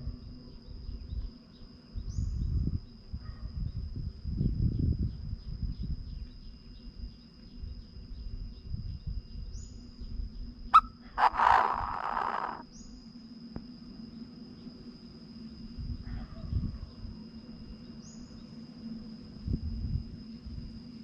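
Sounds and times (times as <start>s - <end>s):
high insect whine: 0.0s - 21.0s
low wind rumble: 2.0s - 12.6s, 19.4s - 21.0s
bird harsh rasping call: 10.8s - 12.6s.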